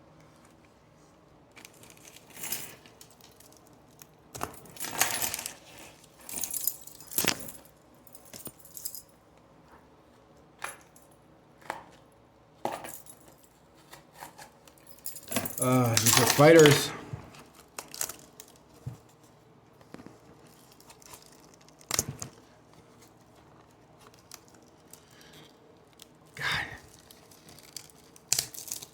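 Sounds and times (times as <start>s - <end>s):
cards being handled: 15.6s - 17.4s.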